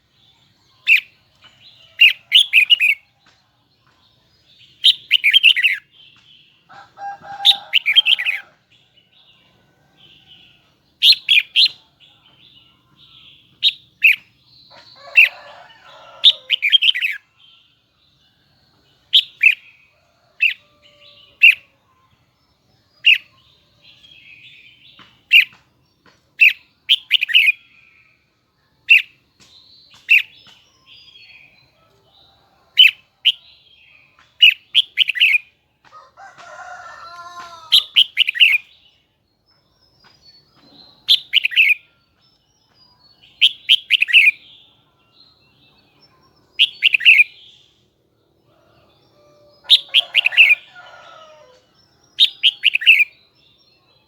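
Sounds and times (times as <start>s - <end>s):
bulbul singing: 39.8s - 47.7s, 48.9s - 53.7s.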